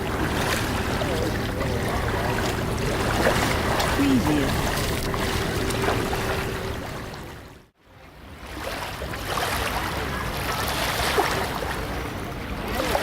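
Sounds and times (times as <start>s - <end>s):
surf washing: 0.0s - 7.6s
voices of beachgoers: 3.9s - 4.8s, 9.5s - 13.0s.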